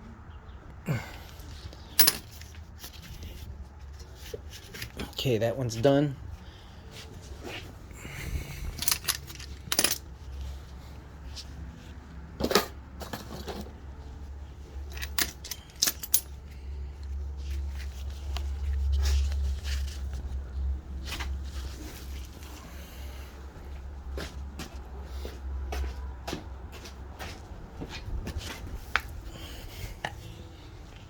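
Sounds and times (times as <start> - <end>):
metal tools clinking: 1.9 - 3.1, 8.5 - 10.1, 14.8 - 16.4.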